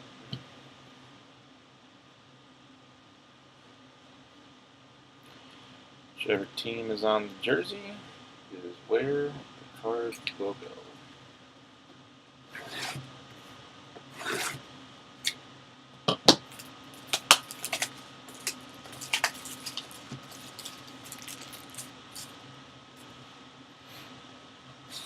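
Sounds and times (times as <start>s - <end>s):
rustling scrapes: 14.1s - 14.6s.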